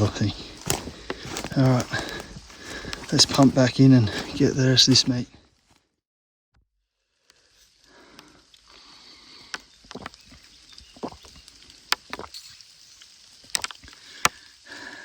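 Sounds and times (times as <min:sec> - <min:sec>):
footsteps through leaf litter: 0:00.0 - 0:05.8
sticks snapping: 0:00.3 - 0:03.6, 0:13.5 - 0:14.5.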